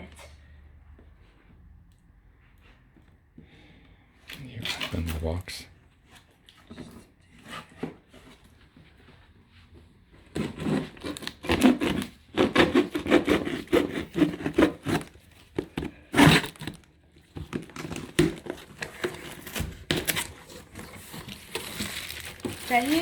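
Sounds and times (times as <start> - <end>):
cardboard packaging scraping and tearing: 10.2 - 23.0.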